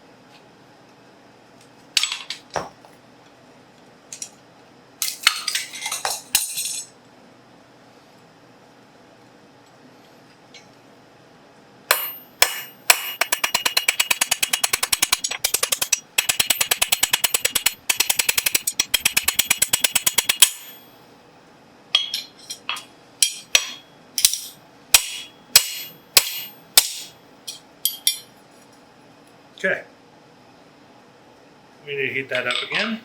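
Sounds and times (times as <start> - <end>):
hammer striking steel on anvil: 11.9 - 20.9, 22.0 - 28.3.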